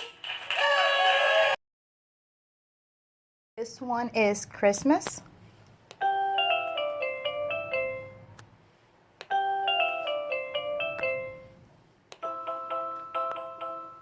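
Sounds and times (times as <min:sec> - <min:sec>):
doorbell chime melody: 0:06.0 - 0:08.3, 0:09.3 - 0:11.6, 0:12.2 - 0:14.0.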